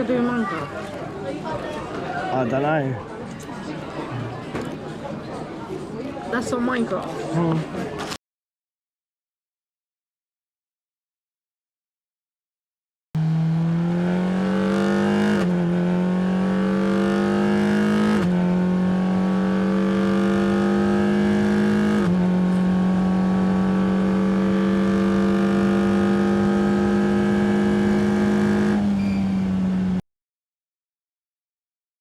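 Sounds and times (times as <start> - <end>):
car engine accelerating: 13.2 - 30.0.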